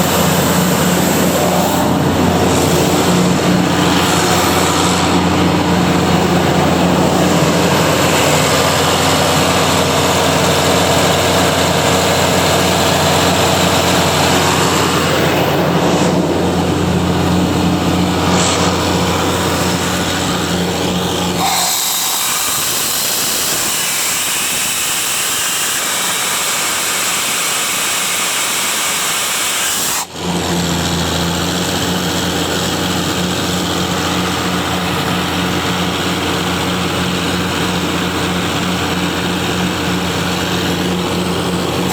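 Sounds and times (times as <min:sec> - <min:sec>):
rushing air hiss: 0:00.0 - 0:30.2
air compressor engine hum: 0:00.0 - 0:41.9.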